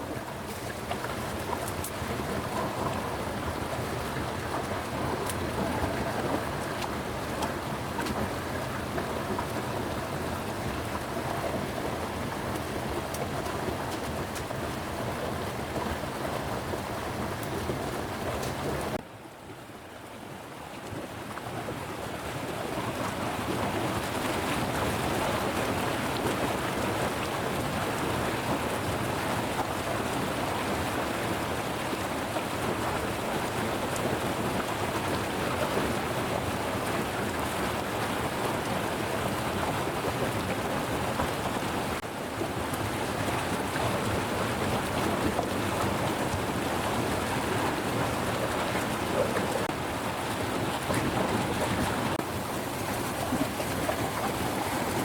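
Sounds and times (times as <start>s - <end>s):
heavy rain hissing and pattering: 32.8s - 55.0s.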